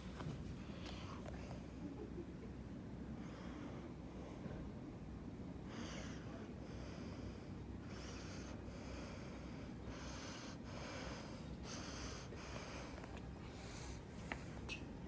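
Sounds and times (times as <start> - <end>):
steady low hum: 0.0 - 15.0
person breathing: 5.7 - 14.6.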